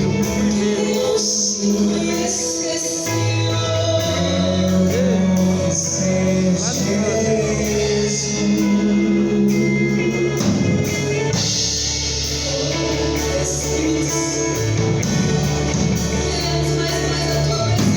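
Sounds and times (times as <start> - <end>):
singing: 0.0 - 10.2
worship band playing: 0.0 - 17.9.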